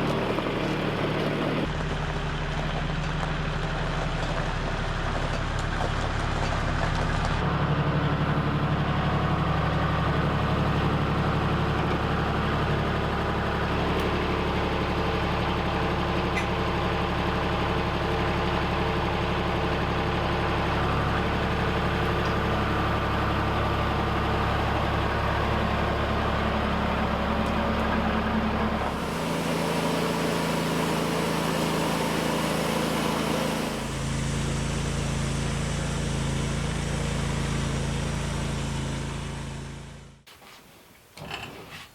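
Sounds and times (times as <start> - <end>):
engine running steadily: 0.0 - 40.3.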